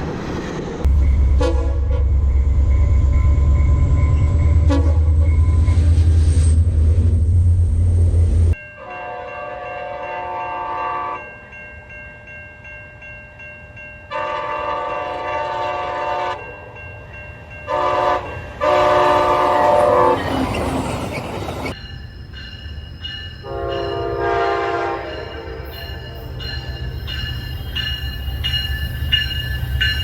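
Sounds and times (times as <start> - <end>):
train rumble: 0.0 - 8.6, 17.6 - 30.0
locomotive air horn blasts: 1.4 - 2.1, 4.7 - 5.2, 8.8 - 11.2, 14.1 - 16.5, 17.7 - 20.5, 23.4 - 25.8.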